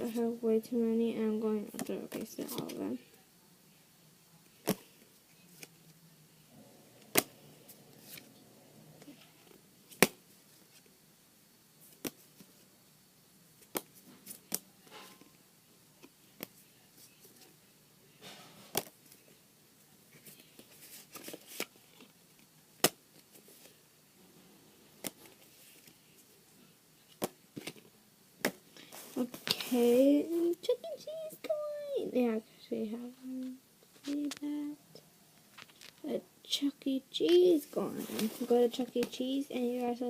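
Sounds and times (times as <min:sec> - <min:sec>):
cards and objects clicking and tapping: 0:07.1 - 0:07.4, 0:13.6 - 0:15.3, 0:18.6 - 0:19.2, 0:20.2 - 0:23.7, 0:25.0 - 0:26.0, 0:27.1 - 0:29.7
faint rustling: 0:37.3 - 0:40.0.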